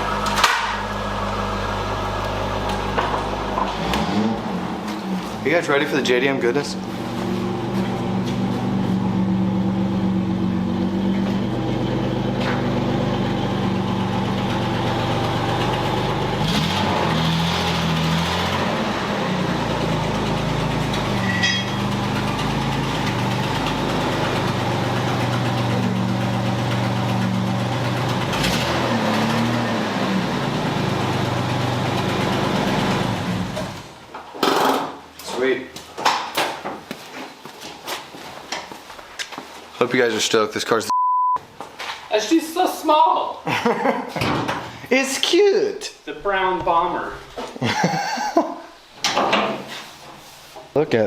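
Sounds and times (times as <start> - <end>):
car engine idling with exhaust leak: 6.7 - 34.0.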